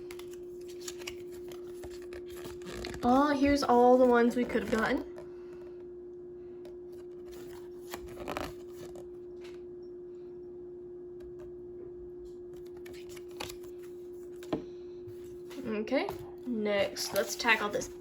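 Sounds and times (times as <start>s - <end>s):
packaging rustling: 0.0s - 5.1s, 7.0s - 9.1s
steady low hum: 0.0s - 18.0s.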